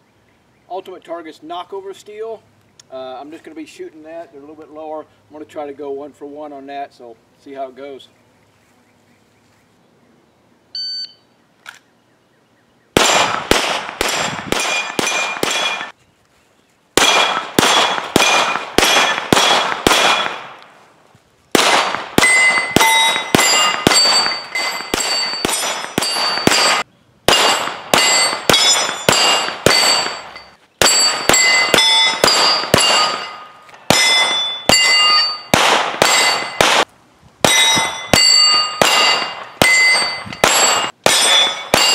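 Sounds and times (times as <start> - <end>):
shot timer beep: 10.8 - 11.3
pistol shots: 13.0 - 15.9, 17.0 - 20.6, 21.5 - 41.9
steel targets clanging: 14.0 - 16.0, 22.2 - 36.8, 37.5 - 41.9.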